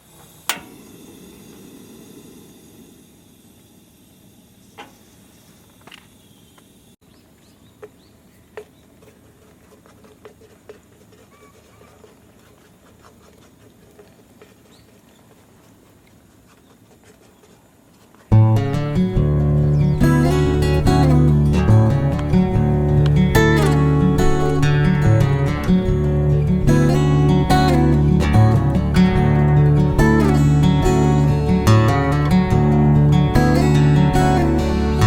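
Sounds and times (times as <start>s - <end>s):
strummed acoustic guitar music: 18.3s - 35.0s.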